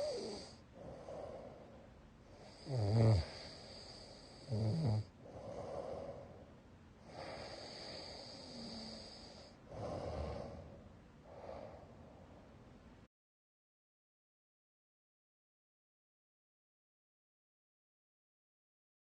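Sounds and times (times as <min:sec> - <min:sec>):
person snoring loudly: 0:00.0 - 0:00.6, 0:02.4 - 0:05.8, 0:07.1 - 0:10.6
noisy breathing: 0:00.0 - 0:12.7.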